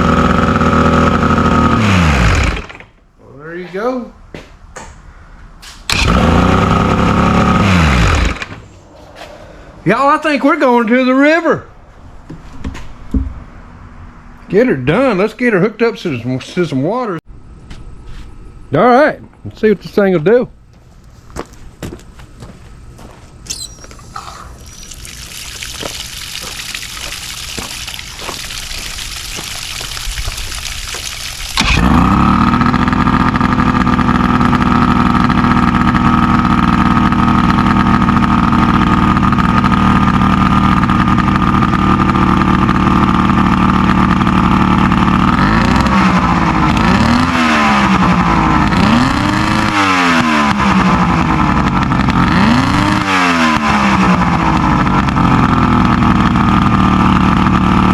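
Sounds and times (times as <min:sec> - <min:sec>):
outboard motor running and revving: 0:00.0 - 0:02.8, 0:05.9 - 0:08.6, 0:24.3 - 0:57.9.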